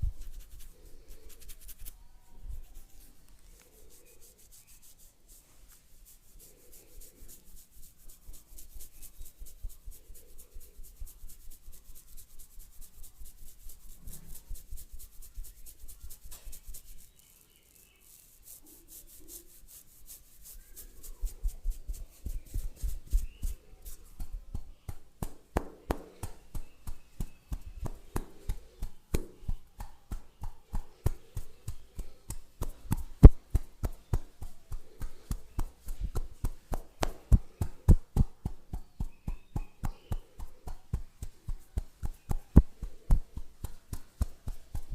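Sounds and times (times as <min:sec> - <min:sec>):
hands rubbing head: 0:00.0 - 0:44.9.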